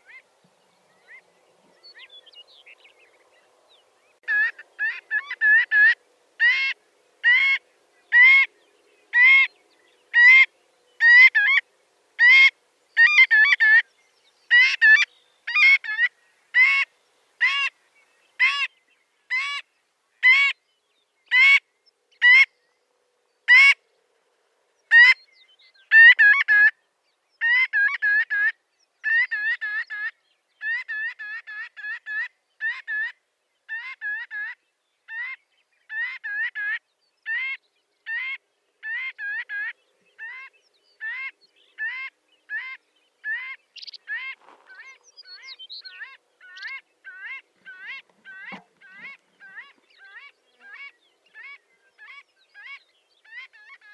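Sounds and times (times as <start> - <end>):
godwit calling: 10.1 - 11.6, 38.1 - 53.9.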